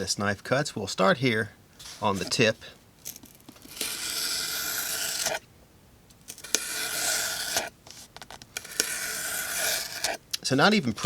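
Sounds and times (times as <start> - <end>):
knife slicing through cardboard: 3.6 - 5.4, 6.4 - 7.7, 8.6 - 10.2.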